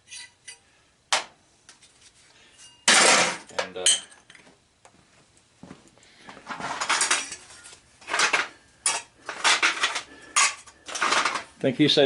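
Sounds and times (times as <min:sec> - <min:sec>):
metal parts clinking and rattling: 0:06.6 - 0:11.5.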